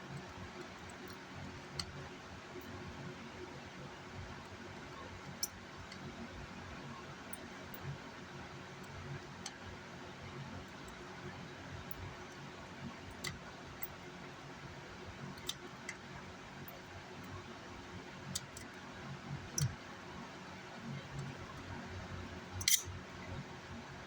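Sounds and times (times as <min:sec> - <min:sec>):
faint steady hum: 0:00.0 - 0:24.0
light clicks and taps of tools: 0:00.1 - 0:02.0, 0:05.2 - 0:06.2, 0:08.8 - 0:09.7, 0:13.1 - 0:14.1, 0:15.2 - 0:17.4, 0:18.2 - 0:18.8, 0:19.4 - 0:19.9, 0:21.0 - 0:21.7, 0:22.6 - 0:23.0.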